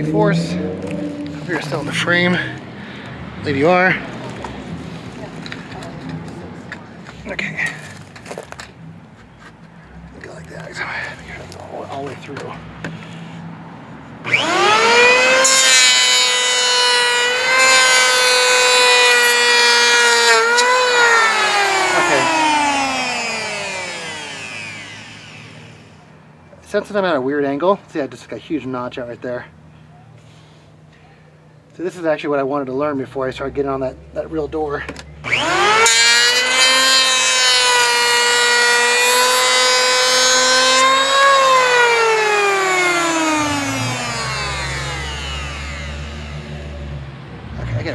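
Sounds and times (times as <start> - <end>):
electric hand planer motor whining: 14.2 - 26.0, 35.2 - 47.0
planer shaving wood: 14.2 - 26.0, 35.2 - 47.0.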